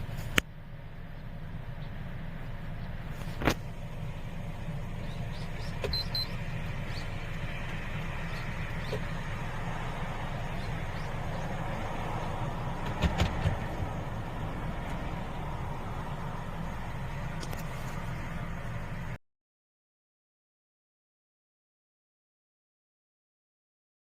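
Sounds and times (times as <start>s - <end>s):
car cabin rumble: 0.0s - 19.2s
knocks: 12.8s - 13.9s.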